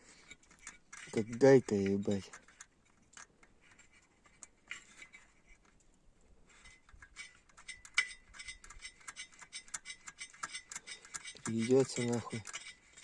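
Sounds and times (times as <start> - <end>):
metal piston parts clicking: 0.2 - 3.3, 6.5 - 13.0.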